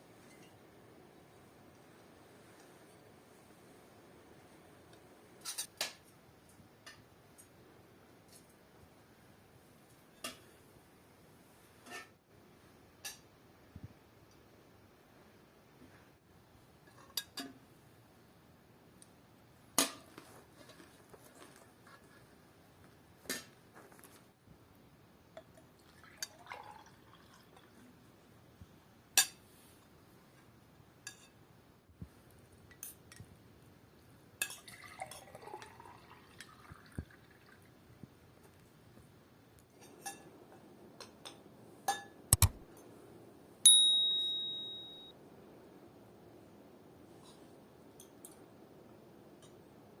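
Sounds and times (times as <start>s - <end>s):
glass ringing high tone: 43.7s - 45.1s.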